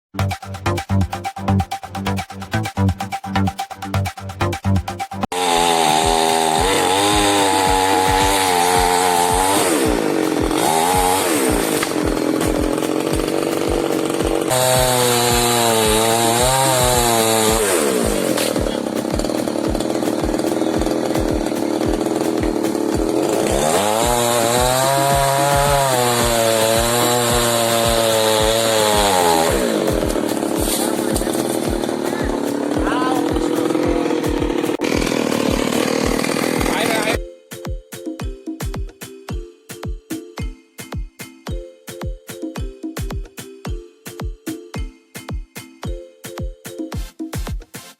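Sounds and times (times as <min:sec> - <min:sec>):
background music with beat: 0:00.1 - 0:47.9
chainsaw revving: 0:05.3 - 0:37.2.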